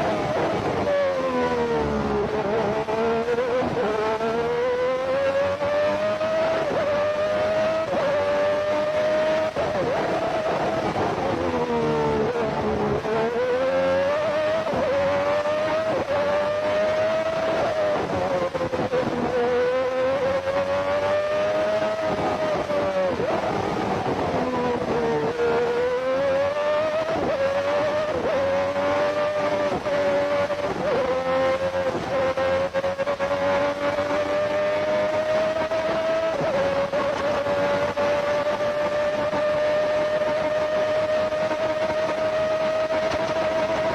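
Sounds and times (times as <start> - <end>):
racing engine revving: 0.0 - 43.9.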